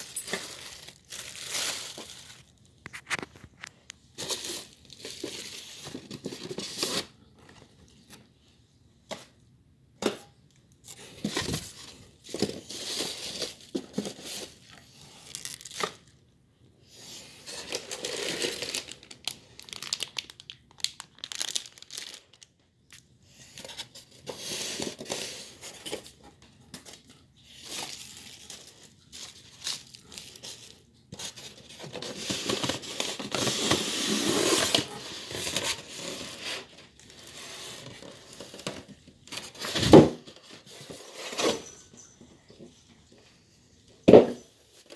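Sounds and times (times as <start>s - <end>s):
wrapping being torn and crumpled: 0.0s - 3.7s, 14.5s - 16.1s, 17.5s - 23.0s.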